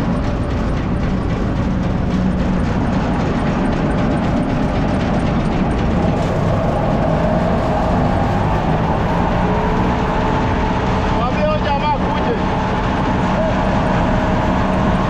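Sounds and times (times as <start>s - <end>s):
grain dryer machinery drone: 0.0s - 15.0s
high mechanical whine: 0.0s - 15.0s.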